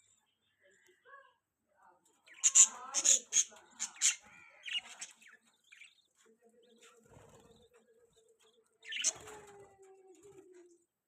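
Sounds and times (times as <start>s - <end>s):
budgerigars chirping: 2.3s - 7.7s, 8.5s - 9.2s.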